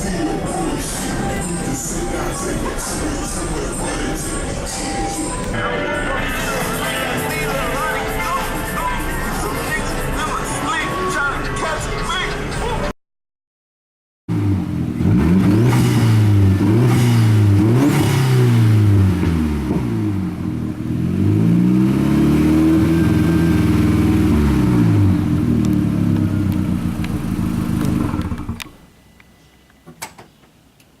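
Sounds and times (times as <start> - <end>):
car engine revving: 14.3 - 28.8.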